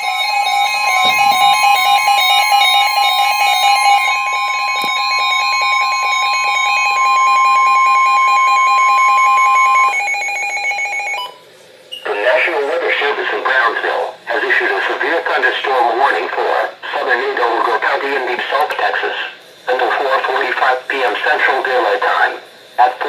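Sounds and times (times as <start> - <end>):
steady high-pitched alarm tone: 0.0 - 11.4, 19.1 - 23.0
low rapidly pulsing beep: 0.8 - 11.4.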